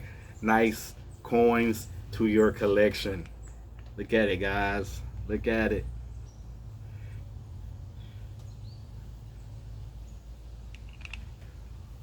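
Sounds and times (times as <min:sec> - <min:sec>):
low steady hum: 0:00.0 - 0:12.0
light clicks: 0:10.7 - 0:11.5.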